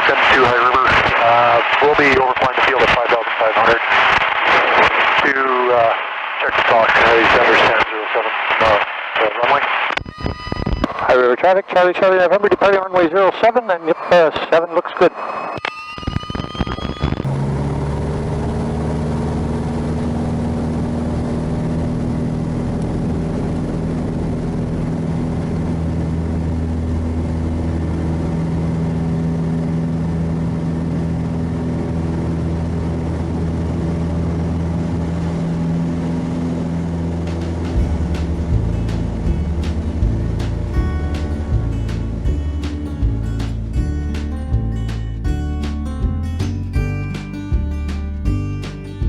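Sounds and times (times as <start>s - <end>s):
propeller plane engine droning: 10.0s - 46.2s.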